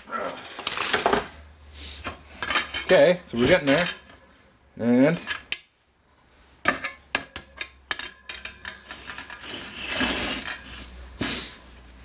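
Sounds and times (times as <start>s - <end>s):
wire rack clinking: 2.4s - 4.2s, 6.7s - 10.7s
wire rack scraping rattle: 2.4s - 4.2s, 6.7s - 10.9s.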